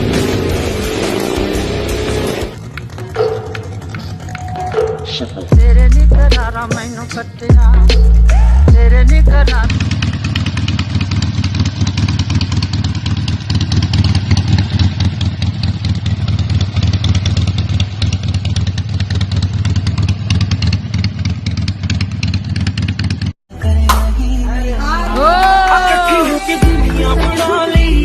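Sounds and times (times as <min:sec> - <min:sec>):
motorcycle engine running: 0:00.0 - 0:23.4.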